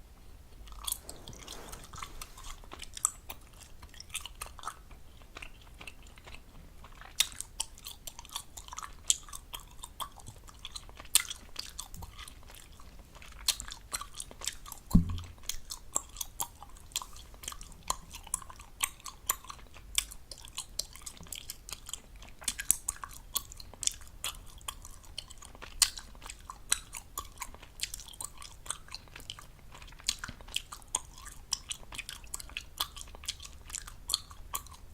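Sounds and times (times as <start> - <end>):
gum chewing with wet smacking: 0.5 - 34.9
heavy low thump: 14.9 - 15.3.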